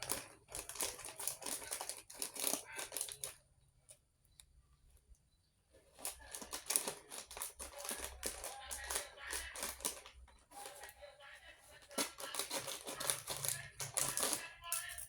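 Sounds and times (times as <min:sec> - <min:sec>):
plastic snack packets crinkling: 0:00.0 - 0:03.4, 0:06.0 - 0:15.0.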